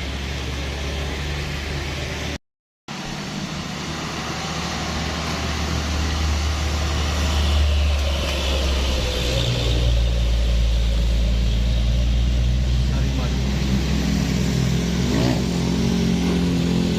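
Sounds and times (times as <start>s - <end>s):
diesel engine running: 0.0s - 16.9s
tyre and road noise: 0.0s - 16.9s.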